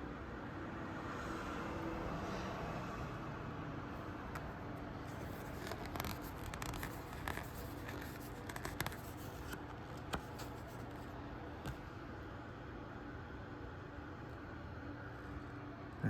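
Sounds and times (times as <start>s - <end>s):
paper rustling: 5.1s - 11.1s.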